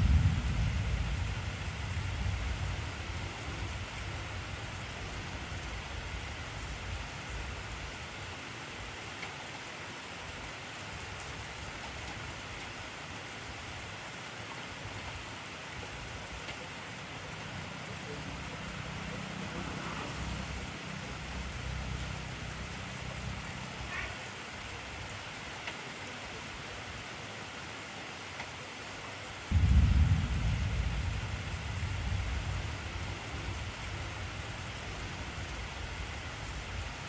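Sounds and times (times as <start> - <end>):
heavy rain falling: 0.0 - 37.0
deep low rumble: 29.5 - 35.5.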